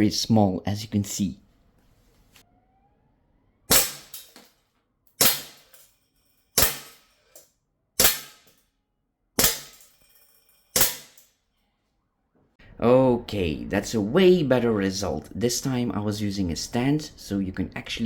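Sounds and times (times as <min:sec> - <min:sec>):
air pistol pops: 0:10.8 - 0:11.2.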